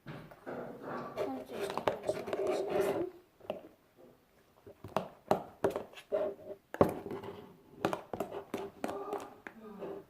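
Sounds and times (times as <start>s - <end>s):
taps and knocks of objects: 4.8s - 5.9s, 6.7s - 9.6s.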